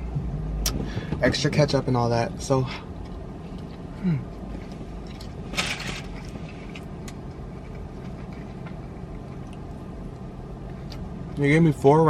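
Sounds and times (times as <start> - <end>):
car interior hum: 0.0 - 12.0.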